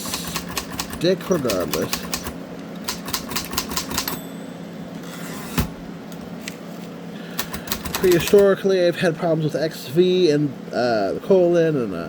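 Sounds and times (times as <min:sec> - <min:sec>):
typewriter keys clacking: 0:00.0 - 0:04.2, 0:07.4 - 0:08.5.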